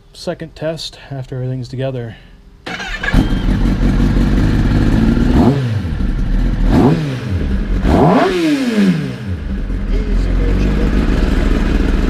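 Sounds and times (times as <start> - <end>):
motorcycle engine idling and revving: 2.7 - 12.0.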